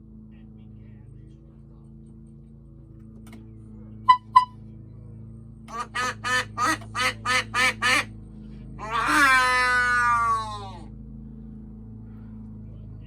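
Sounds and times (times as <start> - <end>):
short high-pitched beeps: 4.1 - 4.6
duck quacking: 5.7 - 8.1, 8.8 - 10.7.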